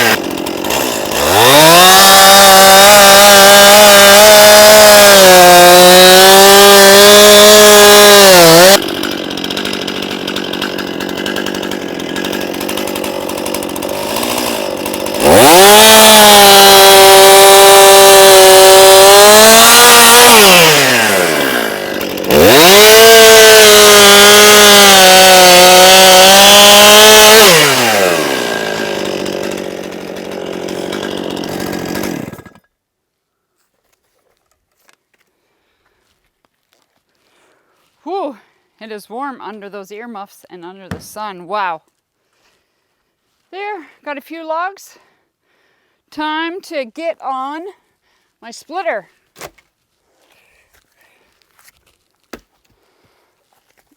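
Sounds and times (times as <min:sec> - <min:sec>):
chainsaw idling: 0:00.0 - 0:32.7
chainsaw cutting logs: 0:00.0 - 0:32.8, 0:38.1 - 0:41.9, 0:46.1 - 0:49.7, 0:51.5 - 0:53.9.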